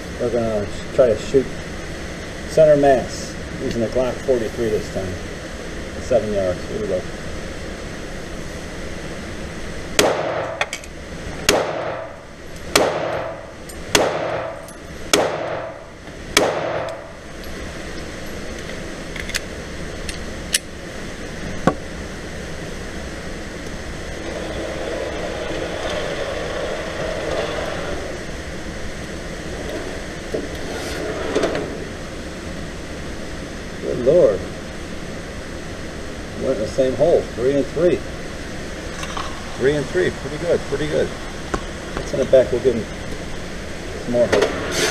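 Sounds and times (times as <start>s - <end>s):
ventilation hum: 0.0s - 44.9s
pistol shots echoing indoors: 10.0s - 10.6s, 11.5s - 12.1s, 12.7s - 15.8s, 16.4s - 17.0s.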